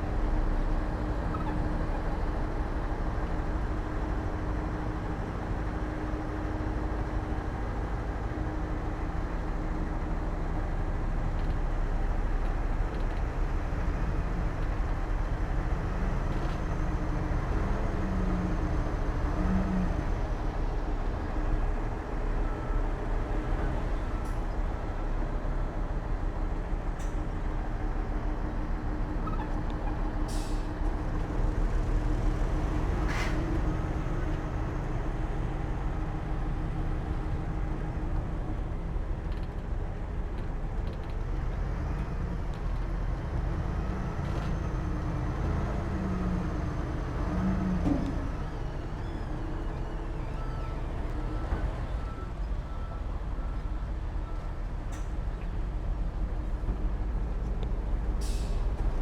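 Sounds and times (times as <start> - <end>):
diesel engine drone: 0.0 - 59.0.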